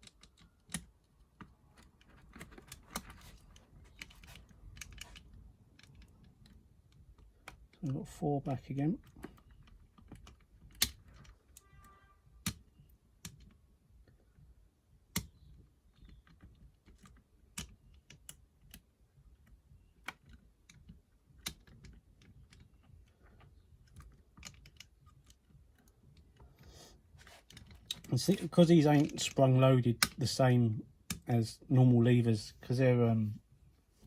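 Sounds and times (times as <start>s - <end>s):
lock pick clicking in lock: 0.0s - 3.4s, 9.1s - 11.7s, 15.1s - 18.8s.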